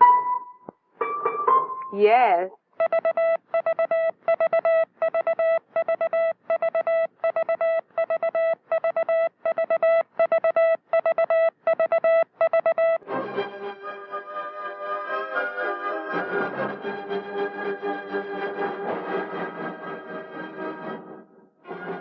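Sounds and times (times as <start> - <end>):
music: 0.0 - 1.9, 13.0 - 22.0
morse code tone: 2.8 - 13.0.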